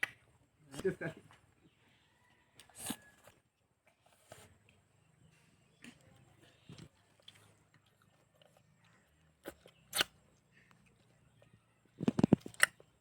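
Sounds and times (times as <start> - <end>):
person biting and chewing: 2.6 - 3.4, 9.3 - 11.0, 12.0 - 13.0.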